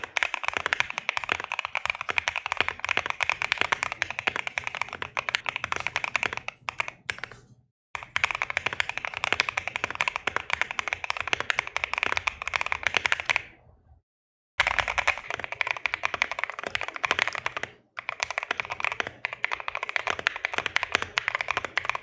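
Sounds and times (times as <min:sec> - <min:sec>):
mechanical keyboard typing: 0:00.0 - 0:13.6, 0:14.6 - 0:22.0.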